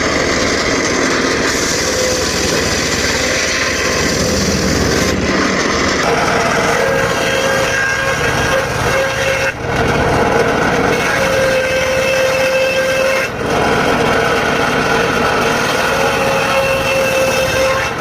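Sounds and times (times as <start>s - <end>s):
circular saw cutting wood: 0.0s - 18.0s.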